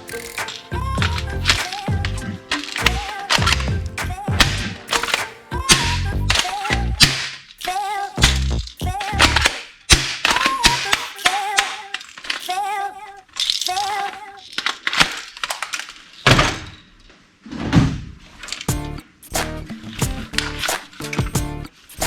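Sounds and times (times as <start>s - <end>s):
background music with wavering melody: 0.0s - 7.1s, 18.7s - 22.0s.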